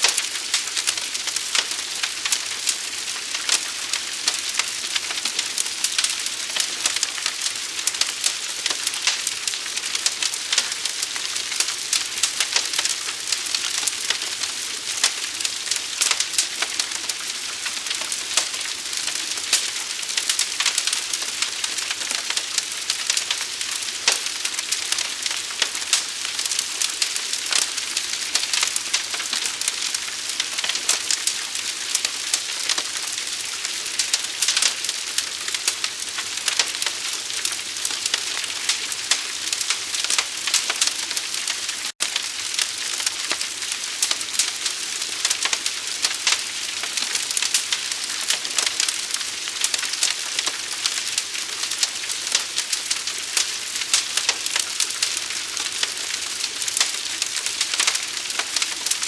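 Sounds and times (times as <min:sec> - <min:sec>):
fire crackling and popping: 0:00.0 - 0:59.0.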